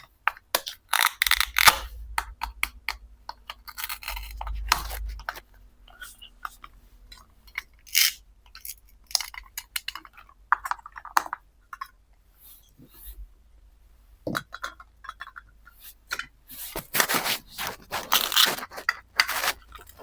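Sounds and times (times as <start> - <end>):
plastic toy pieces clattering: 0.5 - 1.9, 7.5 - 11.9, 16.1 - 20.0
low rumble: 1.2 - 7.2.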